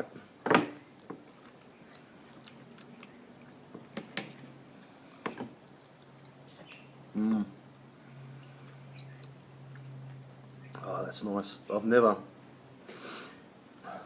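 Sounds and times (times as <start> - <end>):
quiet chewing clicks: 0.9 - 4.9, 5.7 - 6.9, 8.4 - 10.9.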